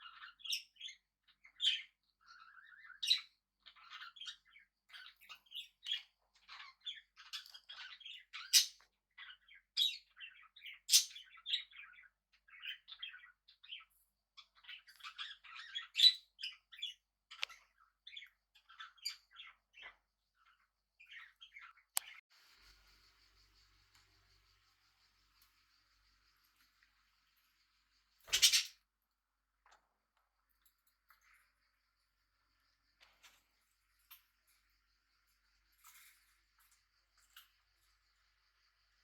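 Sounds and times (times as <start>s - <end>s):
parrots chirping: 0.0s - 22.2s, 28.2s - 28.8s.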